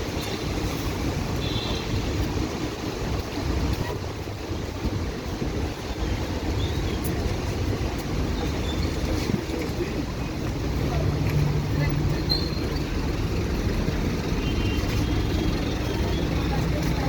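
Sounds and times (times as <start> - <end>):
wind buffeting the microphone: 0.0 - 11.7.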